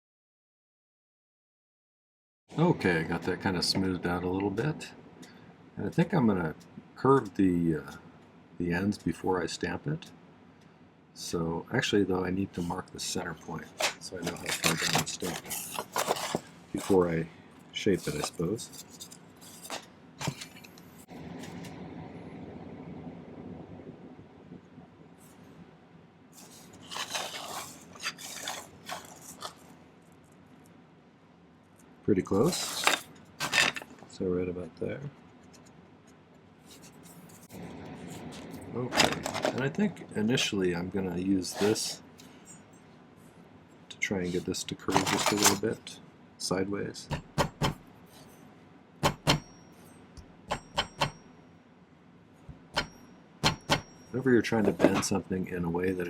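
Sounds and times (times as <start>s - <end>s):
tool scraping and rubbing on workbench: 13.7s - 17.2s, 17.8s - 21.0s, 26.4s - 29.6s, 41.5s - 42.0s, 54.6s - 55.2s
high metallic ring: 49.1s - 51.6s, 52.7s - 54.2s.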